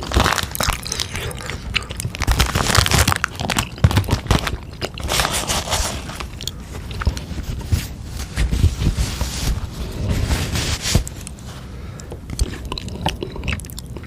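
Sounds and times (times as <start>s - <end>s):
crunchy food chewing: 0.0s - 7.4s, 11.0s - 14.0s
wet mouth sounds: 12.0s - 14.0s.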